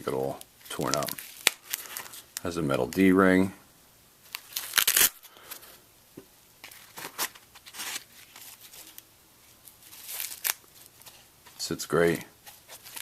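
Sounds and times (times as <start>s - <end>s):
velcro ripping: 4.3s - 5.3s, 9.9s - 11.0s
nylon rustling: 6.6s - 11.8s.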